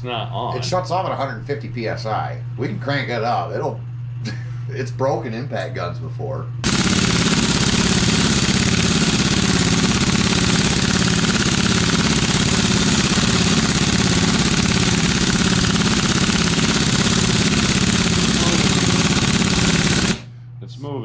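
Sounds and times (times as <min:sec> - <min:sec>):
impact wrench rattling: 0:06.6 - 0:20.3.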